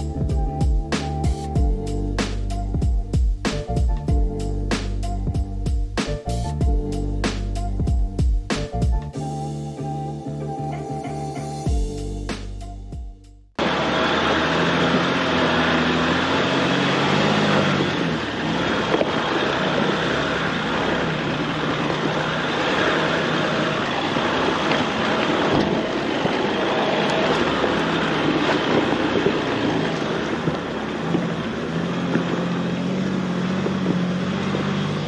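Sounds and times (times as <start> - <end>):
tyres and wind rushing: 0.0 - 35.0
car engine running low: 13.6 - 35.0.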